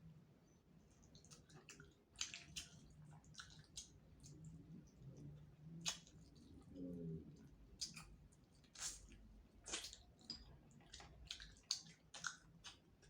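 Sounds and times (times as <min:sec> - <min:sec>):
wet chewing: 0:01.1 - 0:13.0
mouth clicks and smacks: 0:05.8 - 0:06.2.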